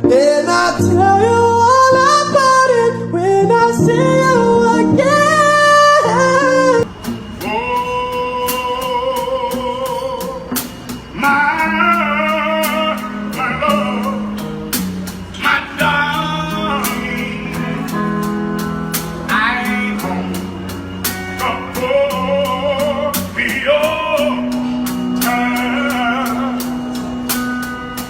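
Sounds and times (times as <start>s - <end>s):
person singing: 0.0s - 10.6s, 11.2s - 14.6s, 15.4s - 27.3s
guitar accompaniment: 0.0s - 28.0s
steady beat: 6.8s - 28.0s.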